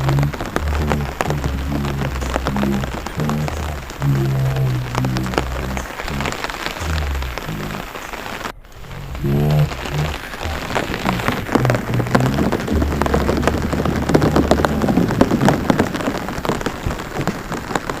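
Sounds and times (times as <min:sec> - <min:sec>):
rising pitched sound: 0:00.0 - 0:07.9
low rumble: 0:00.0 - 0:08.0, 0:08.7 - 0:16.3
rain pattering into water: 0:00.0 - 0:18.0.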